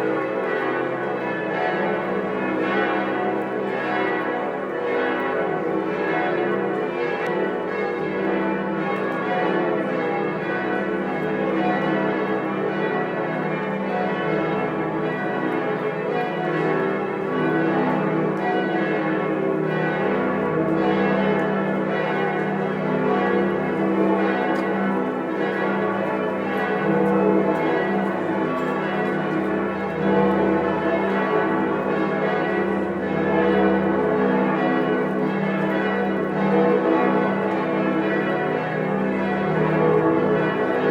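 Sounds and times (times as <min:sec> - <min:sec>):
church bells ringing in full peal: 0:00.0 - 0:40.9.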